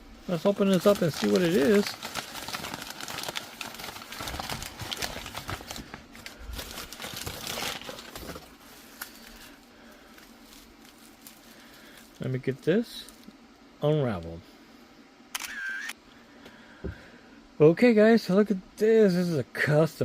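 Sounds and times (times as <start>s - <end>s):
package wrapping crinkling and tearing: 0.3s - 12.3s.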